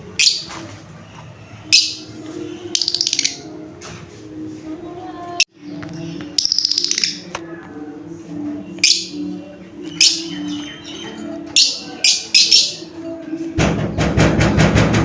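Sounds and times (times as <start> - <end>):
lovebirds chirping: 0.0 - 3.8, 5.4 - 13.3.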